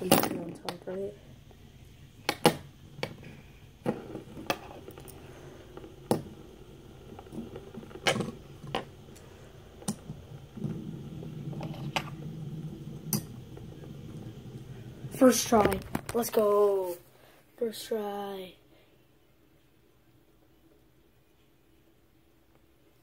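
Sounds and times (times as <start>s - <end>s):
spinner bearing whirring: 0.0s - 16.0s.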